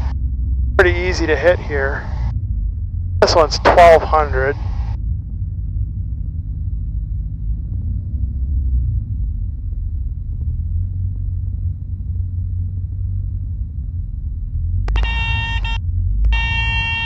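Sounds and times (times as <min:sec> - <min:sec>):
aircraft engine droning: 0:00.0 - 0:17.0
stall warning horn: 0:14.9 - 0:17.0.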